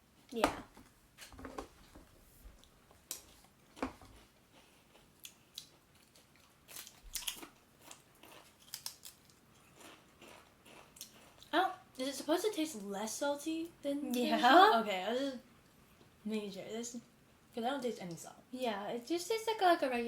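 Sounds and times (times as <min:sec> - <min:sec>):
crisps crunching being chewed: 0:04.1 - 0:11.5.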